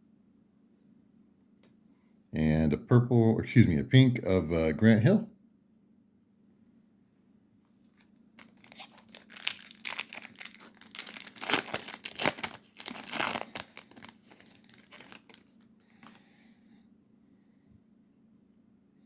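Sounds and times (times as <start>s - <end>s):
wrapper tearing and crinkling: 7.9s - 16.2s.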